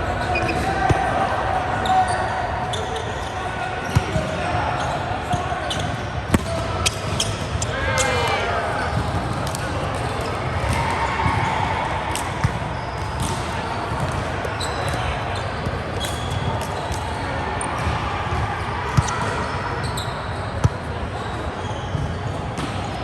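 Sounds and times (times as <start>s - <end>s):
players' voices: 0.0s - 23.0s.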